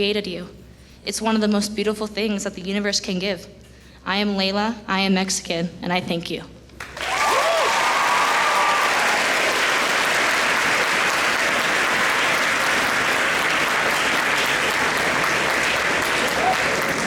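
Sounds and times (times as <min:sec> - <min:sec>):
audience applauding: 0:06.8 - 0:17.0.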